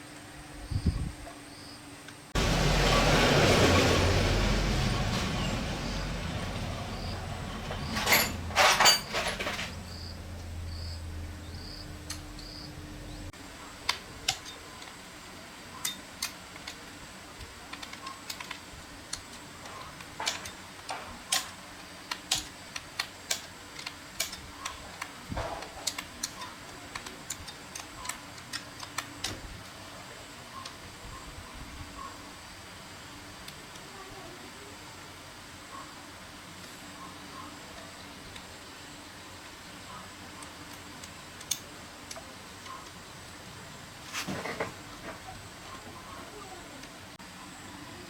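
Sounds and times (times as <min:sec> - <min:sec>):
low steady hum: 0:02.4 - 0:13.6
tools clattering: 0:07.0 - 0:12.6
tools clicking and tapping: 0:15.8 - 0:16.8, 0:17.4 - 0:29.5.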